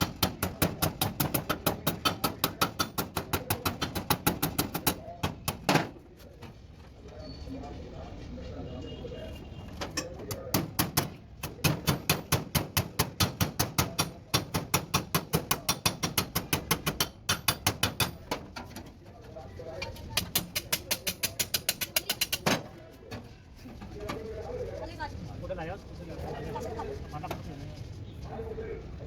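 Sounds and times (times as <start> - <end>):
hammer blows on sheet metal: 0.0 - 6.0, 10.3 - 18.4.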